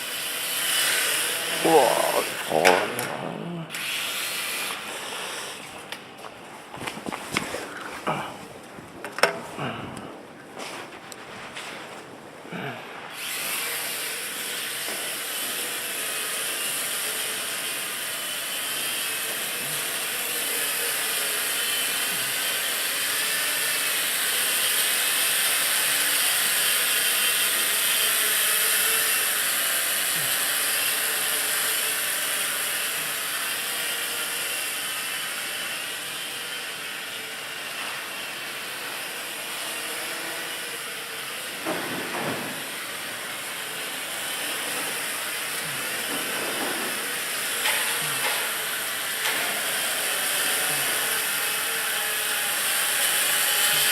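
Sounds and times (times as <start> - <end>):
quadcopter propellers buzzing: 0.0 - 5.9, 18.0 - 35.6, 43.6 - 53.9.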